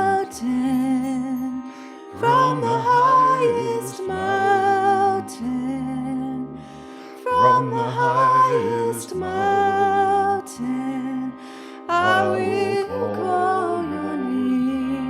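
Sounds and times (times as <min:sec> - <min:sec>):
sustained instrumental chords: 0:00.0 - 0:15.0
woman singing wordless melody: 0:00.0 - 0:15.0.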